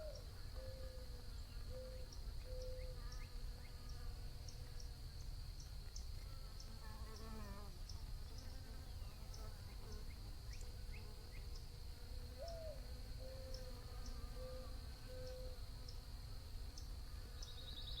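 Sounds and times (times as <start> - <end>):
faint bird chirps: 0.0 - 11.7, 12.3 - 16.0, 16.7 - 18.0
high insect trill: 0.0 - 18.0.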